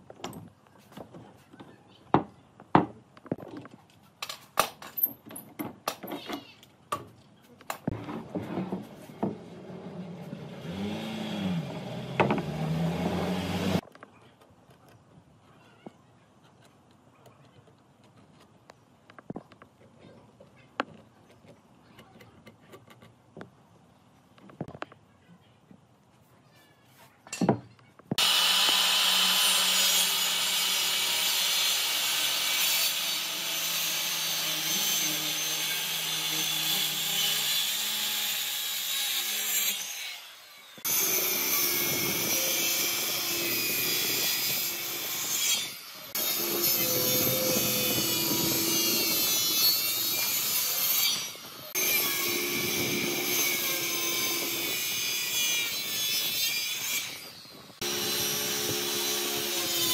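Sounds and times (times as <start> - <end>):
power tool cutting wood: 9.6 - 13.8, 28.2 - 59.9.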